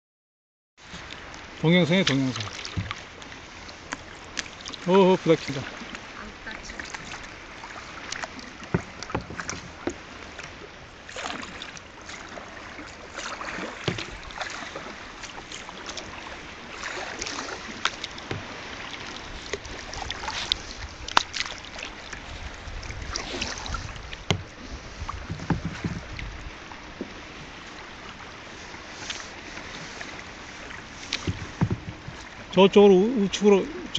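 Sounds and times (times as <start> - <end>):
paddle strokes splashing water: 0.8 - 33.9
sharp knocks: 8.7 - 10.0, 25.2 - 26.1, 31.2 - 32.2
wind on microphone: 22.0 - 26.6.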